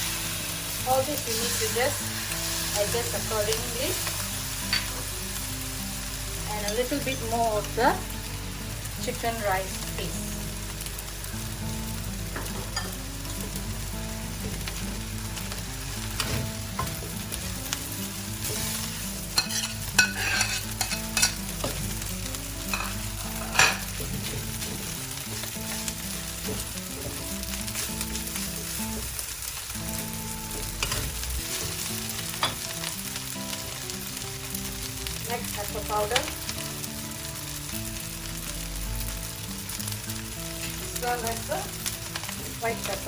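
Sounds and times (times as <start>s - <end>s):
spatula scraping a wok: 0.0s - 3.4s, 18.4s - 21.6s, 22.7s - 28.1s
rice sizzling in a wok: 0.0s - 43.0s.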